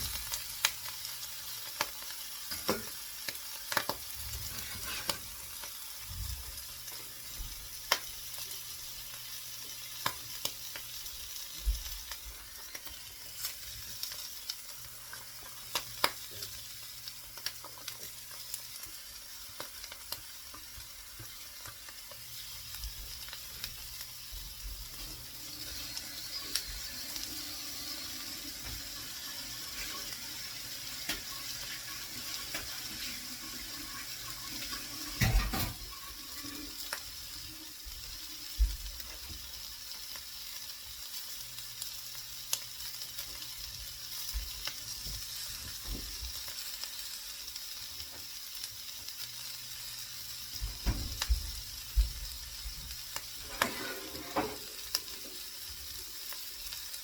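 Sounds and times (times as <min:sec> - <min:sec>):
food sizzling in a frying pan: 0:00.0 - 0:57.0
knocks against a pan: 0:35.2 - 0:35.8.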